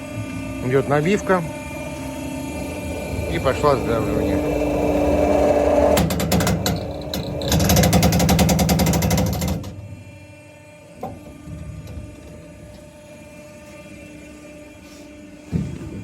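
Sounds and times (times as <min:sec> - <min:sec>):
rhythmic mechanical chatter: 0:00.0 - 0:09.8
press humming: 0:00.1 - 0:09.6
machine clunk: 0:01.8 - 0:09.7.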